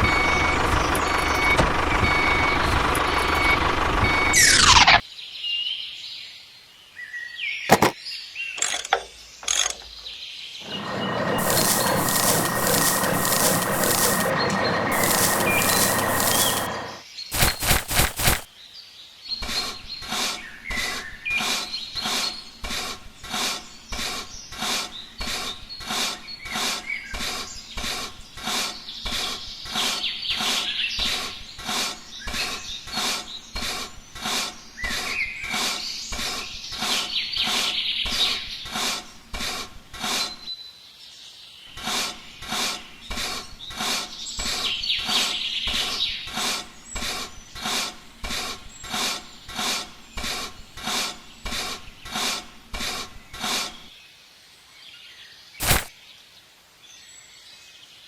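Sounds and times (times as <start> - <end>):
rhythmic rasping strokes: 11.4 - 14.3, 14.9 - 16.7, 17.3 - 18.5.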